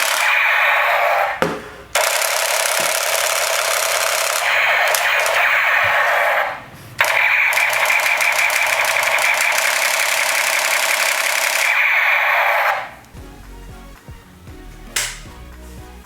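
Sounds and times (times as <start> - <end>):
toy gun machine-gun sound effect: 0.0 - 1.4, 2.0 - 13.0.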